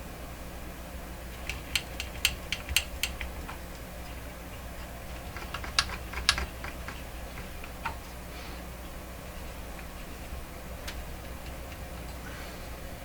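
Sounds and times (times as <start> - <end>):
vacuum tubes clicking in sockets: 1.3 - 8.0, 10.8 - 12.2.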